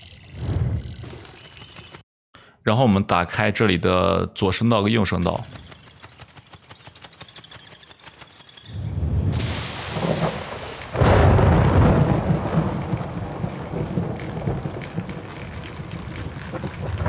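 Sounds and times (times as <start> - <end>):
thunderclap with low rumble: 9.1 - 17.0
rain: 9.3 - 17.0.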